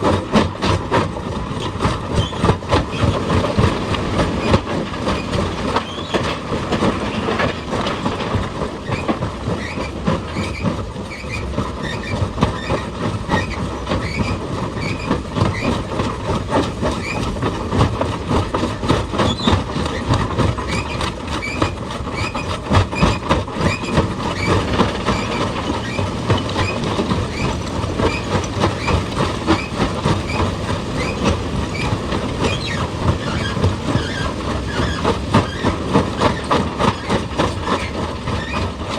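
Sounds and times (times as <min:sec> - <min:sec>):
rapid metallic clatter on rock: 0:00.0 - 0:38.9
machinery engine running: 0:24.1 - 0:38.9.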